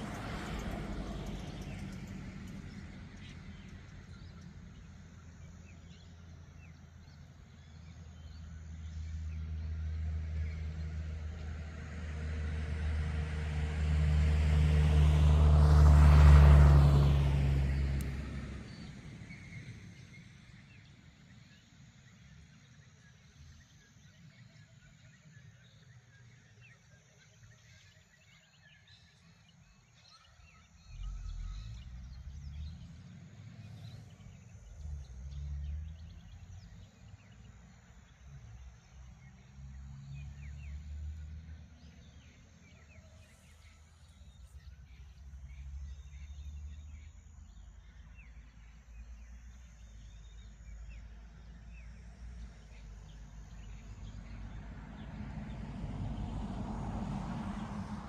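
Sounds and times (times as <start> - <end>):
car driving past: 0.0 - 6.0, 7.6 - 20.8, 30.4 - 58.0.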